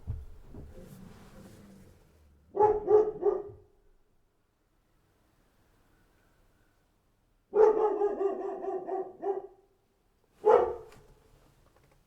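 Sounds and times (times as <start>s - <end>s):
dog barking: 2.5s - 3.7s, 7.5s - 9.7s, 10.4s - 11.1s.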